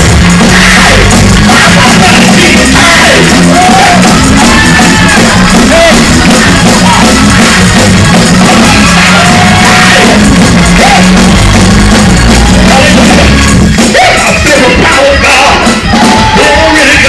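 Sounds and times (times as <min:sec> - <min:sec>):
people singing: 0:00.0 - 0:06.2
distorted live church music: 0:00.0 - 0:17.0
people shouting: 0:00.0 - 0:17.0.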